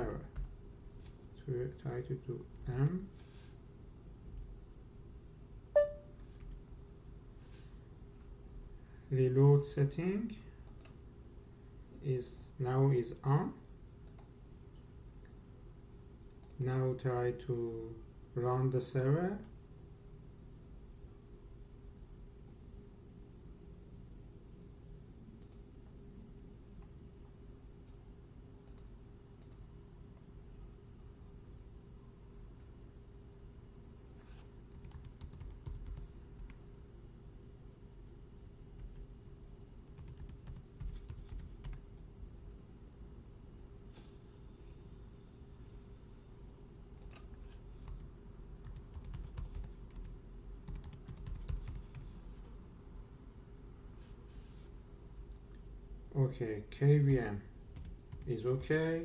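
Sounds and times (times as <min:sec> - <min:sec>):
low steady hum: 0:00.0 - 0:59.0
computer clicks: 0:28.6 - 0:29.7, 0:47.0 - 0:50.1
typing on computer keyboard: 0:34.7 - 0:36.6, 0:40.0 - 0:41.8, 0:47.0 - 0:52.1, 0:57.7 - 0:58.3.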